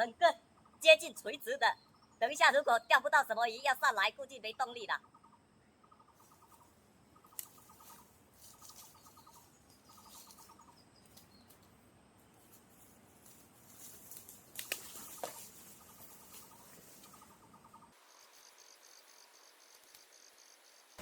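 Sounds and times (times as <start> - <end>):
rustling: 6.2 - 17.4
small animal pulsed trill: 14.9 - 21.0.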